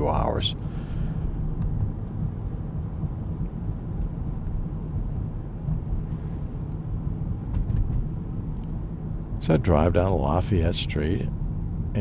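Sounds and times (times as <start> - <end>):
tyre noise on road: 0.0 - 9.4
car engine rumble: 0.0 - 12.0.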